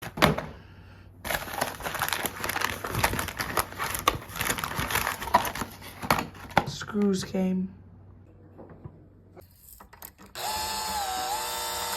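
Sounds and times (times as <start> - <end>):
packaging crinkling and rustling: 1.3 - 6.6.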